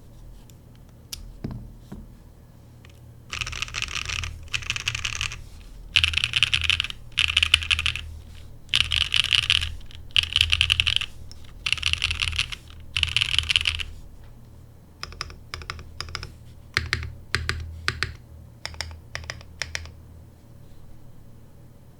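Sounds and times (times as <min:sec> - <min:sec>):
mechanical keyboard typing: 0:02.9 - 0:13.9, 0:15.0 - 0:20.0.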